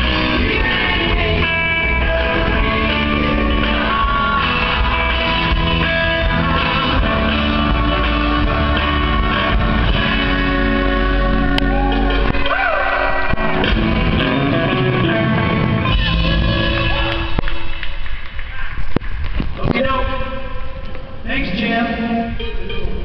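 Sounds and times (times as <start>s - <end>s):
person singing: 0.0s - 9.6s
country-rock band playing live: 0.0s - 17.6s.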